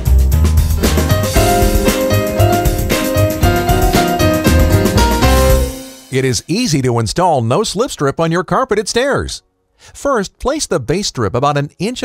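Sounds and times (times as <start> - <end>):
upbeat piano and keyboard music: 0.0 - 6.8.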